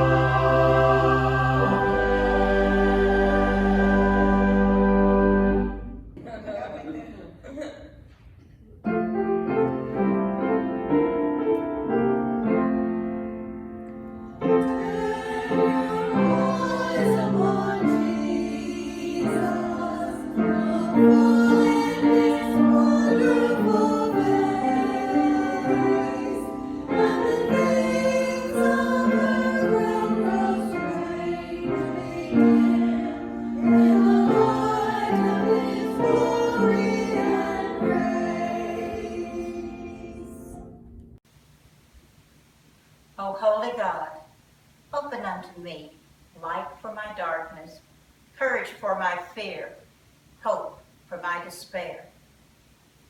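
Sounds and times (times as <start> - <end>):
choir singing sacred music: 0.0 - 6.1, 14.4 - 40.9
instrumental accompaniment: 0.0 - 6.2.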